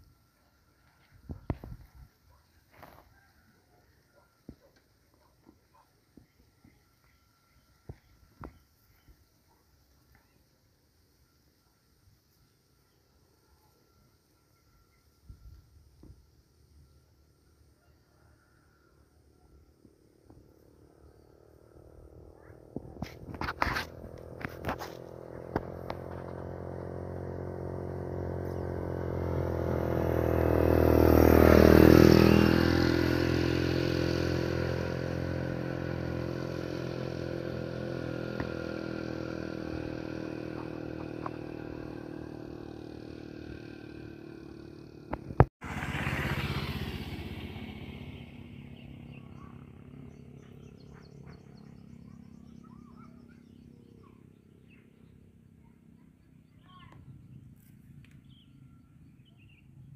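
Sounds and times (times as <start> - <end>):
vehicle engine passing: 20.6 - 55.2.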